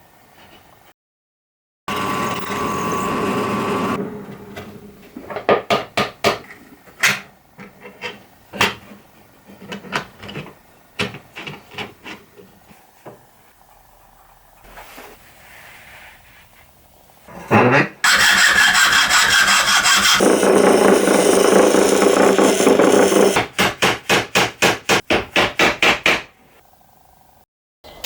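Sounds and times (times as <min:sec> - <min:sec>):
power tool running: 0:01.9 - 0:04.0, 0:18.0 - 0:23.4.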